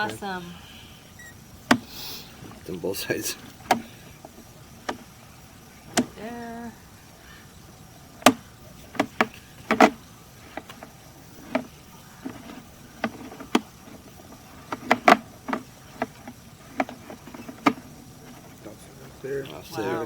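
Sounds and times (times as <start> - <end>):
sharp clicks and knocks: 8.2 - 18.6.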